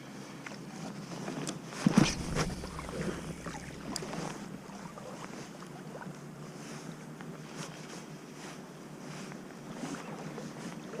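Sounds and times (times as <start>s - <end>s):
wind: 0.0s - 11.0s
water hissing: 2.1s - 5.2s.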